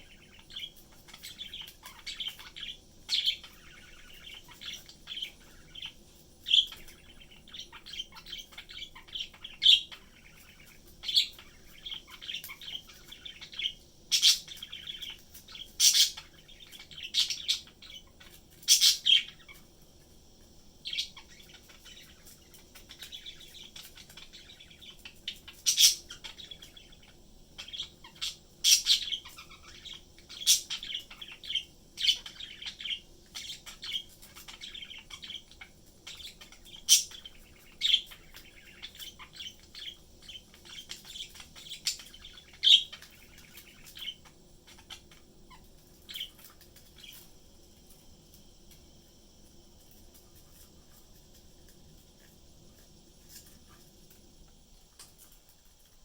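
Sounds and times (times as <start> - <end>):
budgerigars chirping and warbling: 0.0 - 19.8, 20.8 - 47.4
sharp loud bird calls: 20.9 - 47.2.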